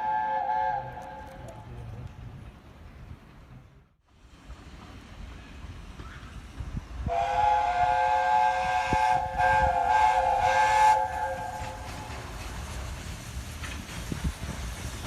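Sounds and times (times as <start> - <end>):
low train rumble: 0.0 - 15.0
train horn chord: 7.1 - 11.8.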